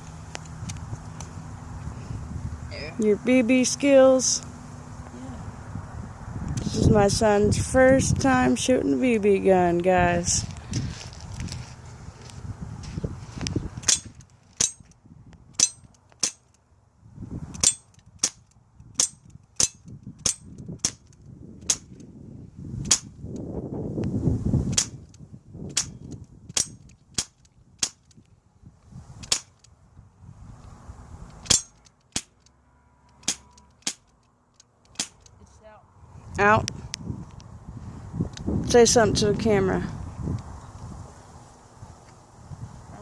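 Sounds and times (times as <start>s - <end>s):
bb gun cracks: 17.6s - 22.0s, 24.7s - 28.2s, 29.2s - 29.7s, 33.1s - 34.1s, 34.9s - 35.4s.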